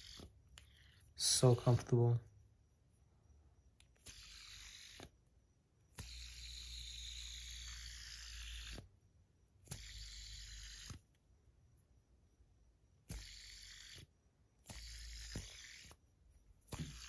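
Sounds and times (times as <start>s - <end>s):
fidget spinner bearing whir: 0.0s - 1.7s, 3.8s - 9.0s, 9.6s - 11.2s, 12.9s - 17.0s.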